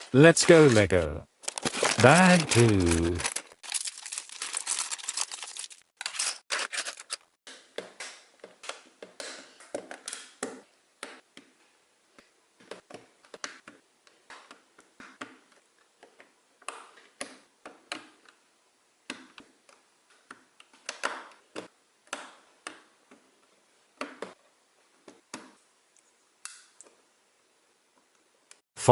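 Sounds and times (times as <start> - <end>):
plastic pieces rustling: 0.0 - 7.3.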